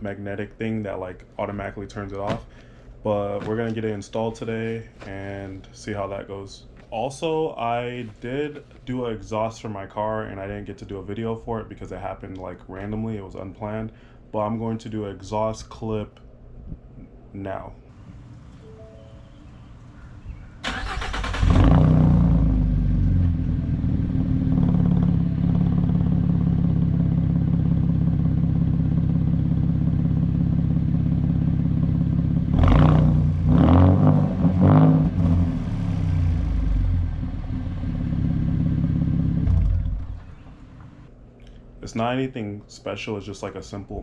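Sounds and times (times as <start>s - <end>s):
car engine starting and idling: 19.4s - 41.1s
car engine revving: 20.7s - 26.8s, 32.2s - 40.4s.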